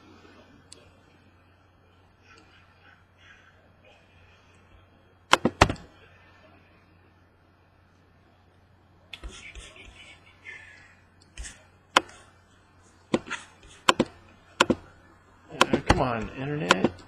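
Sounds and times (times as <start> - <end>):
faint low hum: 0.0 - 17.0
sharp clicks and taps: 5.3 - 5.9, 9.1 - 10.0, 11.2 - 12.2, 13.1 - 14.9, 15.5 - 17.0.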